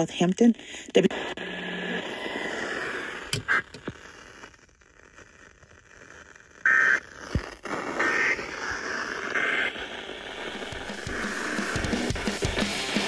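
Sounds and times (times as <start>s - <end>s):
radio hiss: 0.0s - 13.0s.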